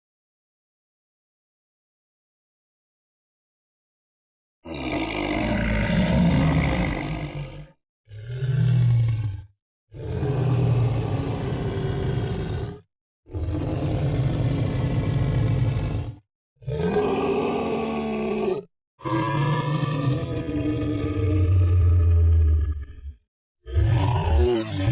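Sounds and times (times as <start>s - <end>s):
monster growling groans: 4.7s - 9.4s, 10.0s - 24.9s.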